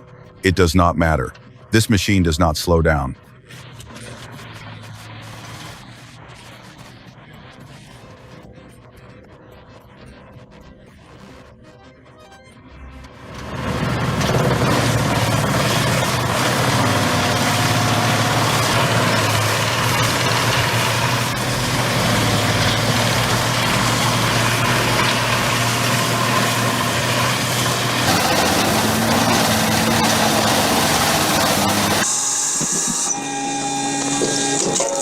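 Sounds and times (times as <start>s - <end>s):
heavy machine engine hum: 12.7s - 35.0s.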